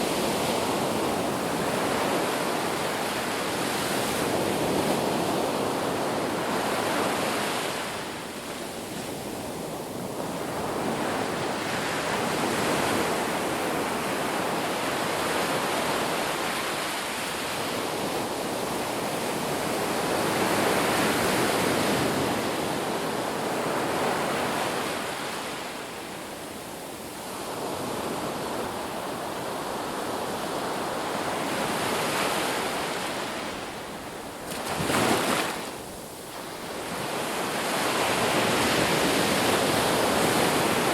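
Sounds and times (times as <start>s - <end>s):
waves breaking on a beach: 0.0s - 40.9s.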